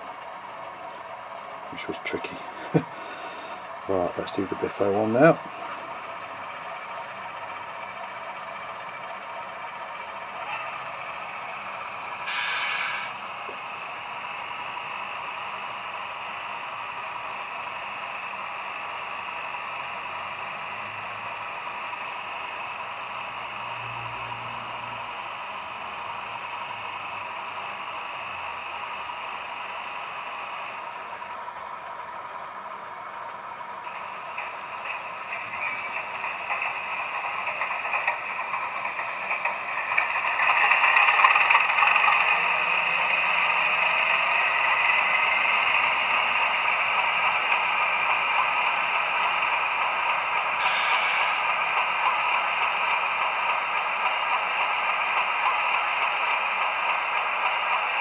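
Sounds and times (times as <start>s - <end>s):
model locomotive engine sound: 0.0s - 58.0s
model train wheels clattering: 32.8s - 58.0s.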